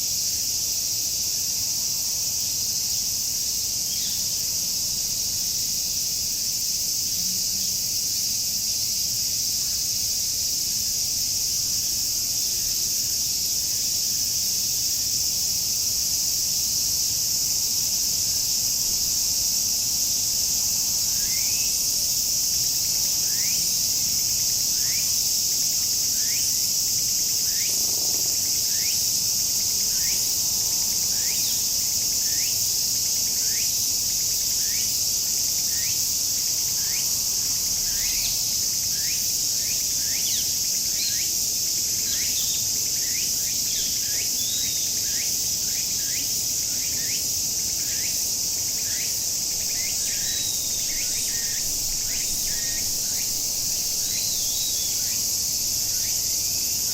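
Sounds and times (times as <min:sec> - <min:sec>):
cicadas buzzing: 0:00.0 - 0:56.9.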